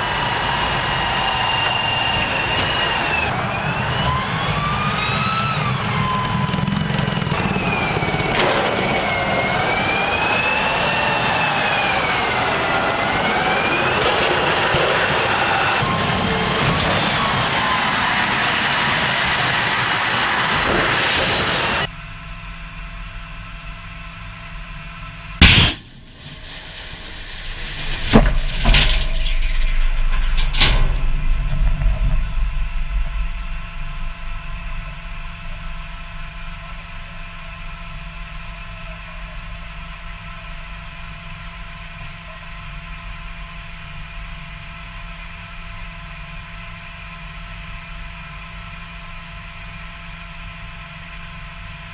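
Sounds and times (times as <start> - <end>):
vehicle engine hum: 0.0 - 51.9
explosions with deep rumbling: 25.4 - 36.6.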